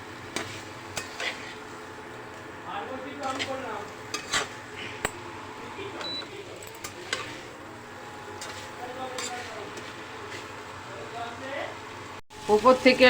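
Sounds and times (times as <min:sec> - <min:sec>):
faint sizzle: 0:00.0 - 0:13.0
spatula scraping in a pan: 0:00.2 - 0:02.1, 0:03.1 - 0:06.2, 0:06.8 - 0:10.9.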